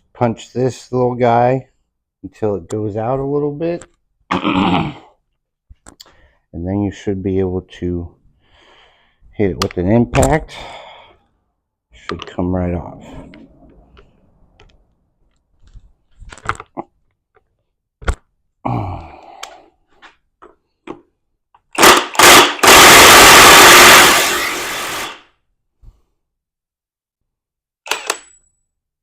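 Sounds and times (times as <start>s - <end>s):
impact wrench hammering: 21.8s - 25.2s.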